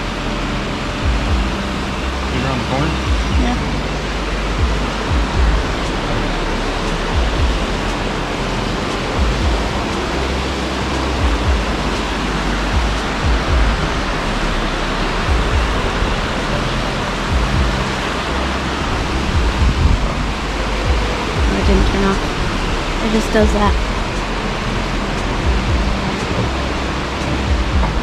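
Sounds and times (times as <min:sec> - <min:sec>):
waterfall rushing: 0:00.0 - 0:28.0
wind buffeting microphone: 0:00.0 - 0:28.0.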